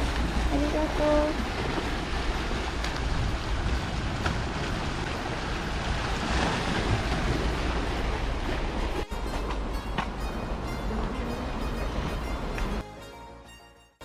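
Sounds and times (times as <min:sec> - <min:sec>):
wind buffeting microphone: 0:00.0 - 0:09.0
sea waves washing: 0:00.0 - 0:12.8.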